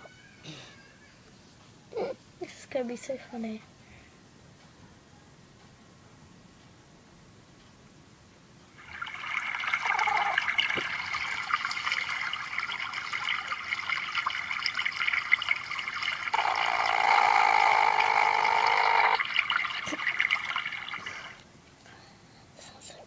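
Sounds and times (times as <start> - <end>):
trickling water: 8.7 - 21.4.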